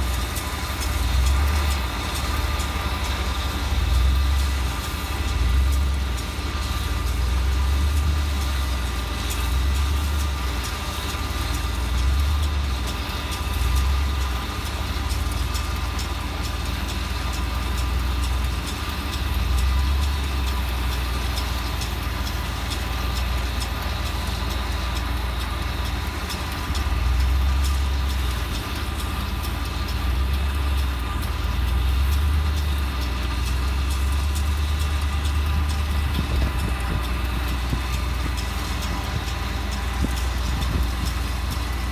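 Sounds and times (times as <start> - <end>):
tractor diesel engine rumble: 0.0 - 41.9.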